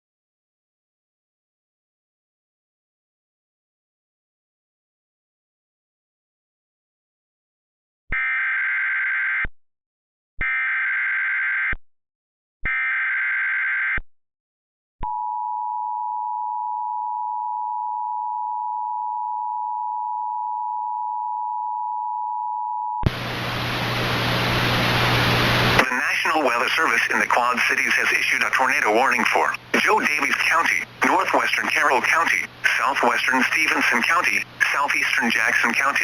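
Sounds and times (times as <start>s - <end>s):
steady two-tone alert signal: 25.8s - 36.0s.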